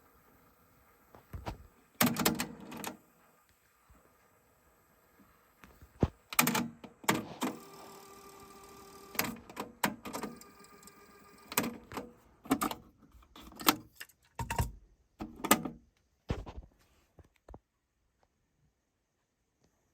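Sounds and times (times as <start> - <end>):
cassette mechanism whir: 1.4 - 3.0, 6.0 - 15.8.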